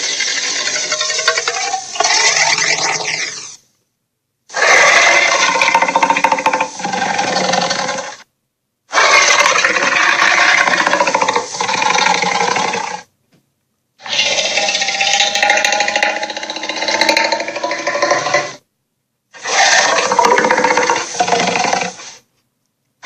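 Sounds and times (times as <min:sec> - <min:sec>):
monster growling roar: 0:08.9 - 0:13.0, 0:14.0 - 0:18.6, 0:19.4 - 0:22.1.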